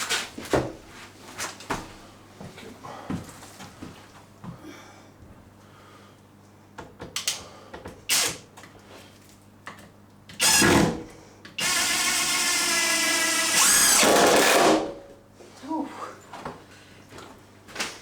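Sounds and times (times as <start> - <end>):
power drill running: 10.4 - 11.0, 11.6 - 15.0.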